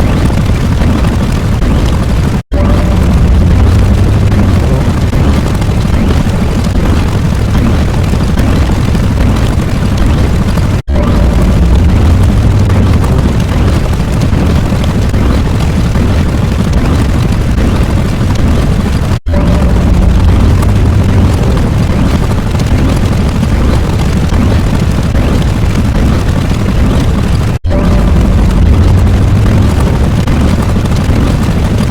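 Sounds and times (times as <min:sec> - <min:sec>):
loud low rumbling: 0:02.5 - 0:07.0, 0:10.9 - 0:14.7, 0:19.2 - 0:26.0, 0:26.8 - 0:31.9.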